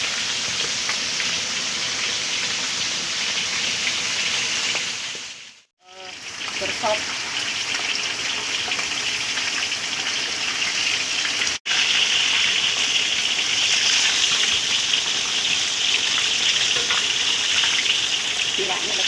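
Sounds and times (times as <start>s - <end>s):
fish frying in hot oil: 0.0s - 19.0s.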